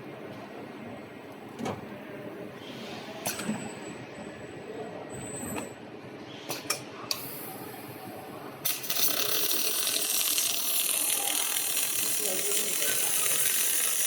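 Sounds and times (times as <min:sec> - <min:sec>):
welding arc hissing crackle: 0:08.7 - 0:14.0.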